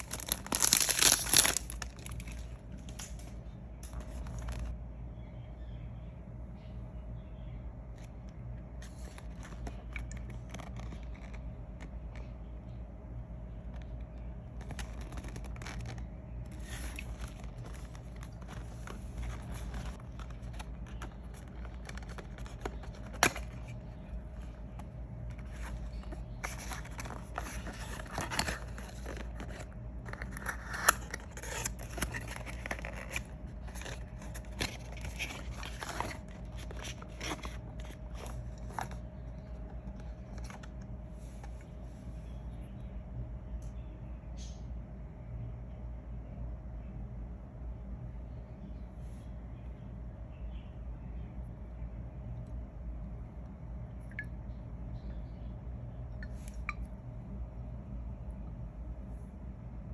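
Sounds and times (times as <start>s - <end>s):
packaging rustling and crinkling: 0.0s - 4.8s, 13.8s - 40.8s
low hum: 0.0s - 59.9s.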